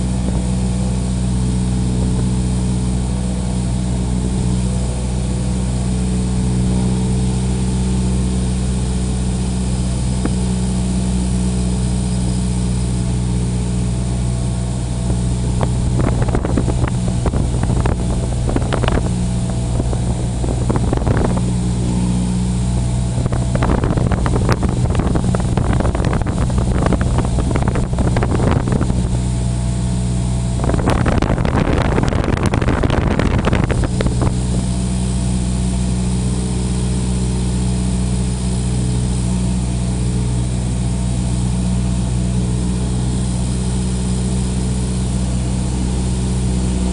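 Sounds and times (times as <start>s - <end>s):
propeller plane engine droning: 0.0s - 46.9s
gusty bursts of noise: 15.1s - 29.5s, 30.3s - 34.7s.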